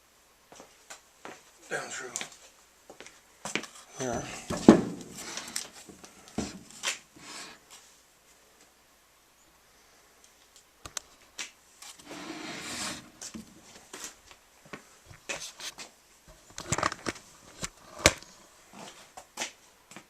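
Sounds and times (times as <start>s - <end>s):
scraping rustle: 11.8s - 14.2s.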